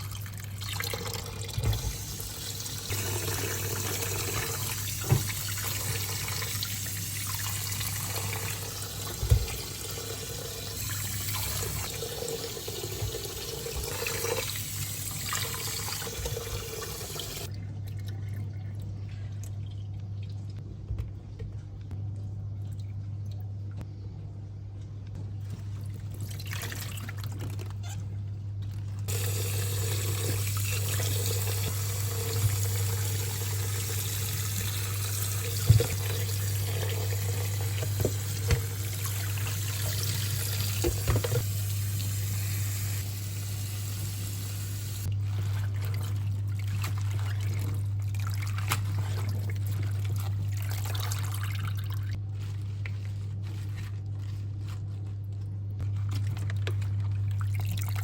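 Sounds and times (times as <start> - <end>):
tap running into a sink: 4.2 - 6.1, 9.0 - 9.8, 35.5 - 36.1, 37.7 - 38.8, 40.0 - 41.5.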